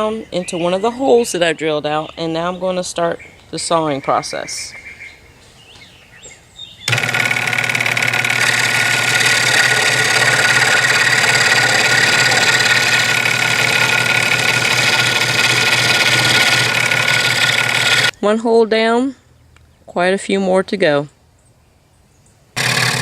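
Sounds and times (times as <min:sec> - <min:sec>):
scroll saw cutting wood: 0:06.9 - 0:18.1, 0:22.6 - 0:23.0.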